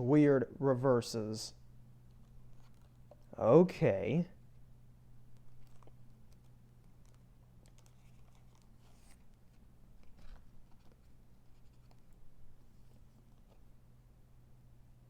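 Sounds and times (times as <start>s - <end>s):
steady low hum: 0.0s - 15.0s
trading cards rustling and tapping: 5.3s - 13.6s.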